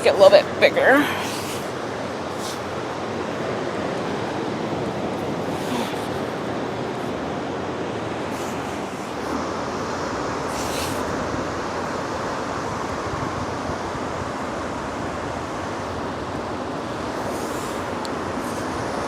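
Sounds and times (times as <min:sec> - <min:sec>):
ocean surf: 0:00.0 - 0:19.0
wind noise on microphone: 0:00.0 - 0:19.0
hissing swishes: 0:01.1 - 0:02.7, 0:10.5 - 0:11.2.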